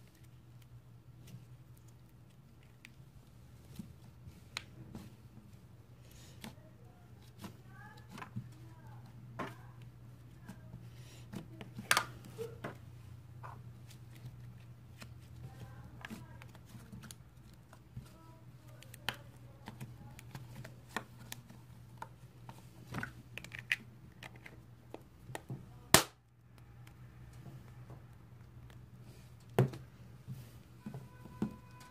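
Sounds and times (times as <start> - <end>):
plastic eggs clicking and tapping: 15.3 - 27.4
sharp plastic snap: 25.9 - 26.2.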